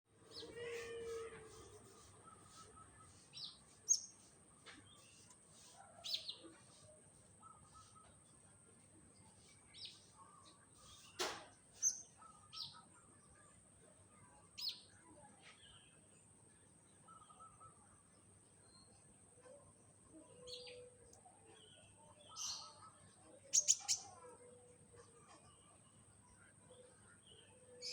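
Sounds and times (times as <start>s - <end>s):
faint high bird chirps: 0.3s - 8.2s, 14.2s - 16.2s, 16.9s - 27.9s.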